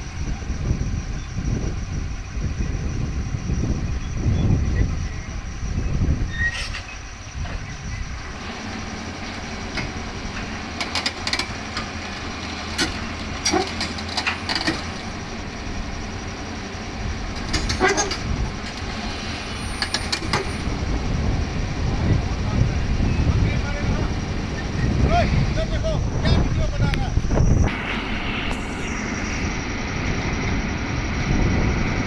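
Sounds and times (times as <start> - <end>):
diesel engine running: 0.0 - 32.0
metallic clanks and squeals of tracks: 6.2 - 20.8.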